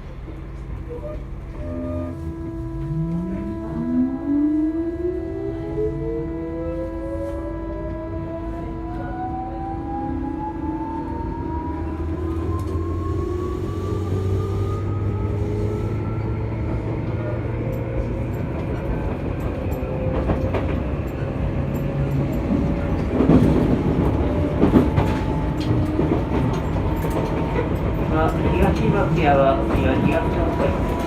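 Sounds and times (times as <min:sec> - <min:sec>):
electric train chopper tones rising: 0:00.0 - 0:17.5
low train running rumble: 0:00.0 - 0:31.0.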